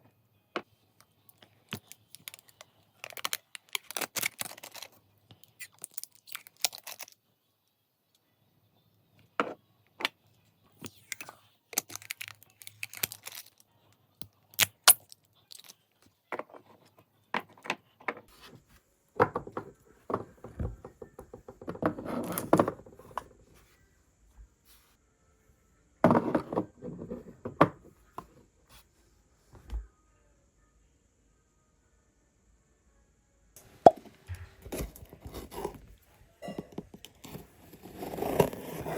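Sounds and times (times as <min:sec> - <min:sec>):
packaging rustling: 0:01.7 - 0:05.0, 0:11.8 - 0:13.6
small objects clicking and rattling: 0:01.7 - 0:07.2, 0:10.9 - 0:13.6.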